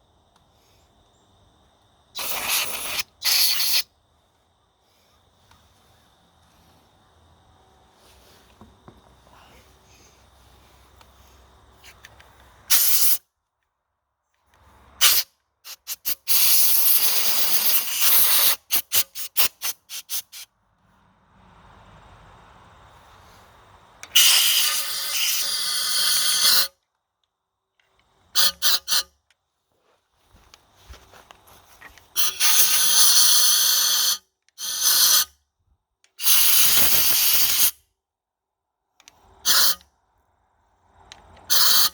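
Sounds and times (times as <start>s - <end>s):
spray nozzle hissing blasts: 2.2s - 3.9s, 12.7s - 13.2s, 15.0s - 20.4s, 32.2s - 35.2s, 36.2s - 37.8s, 39.4s - 39.8s, 41.5s - 41.9s.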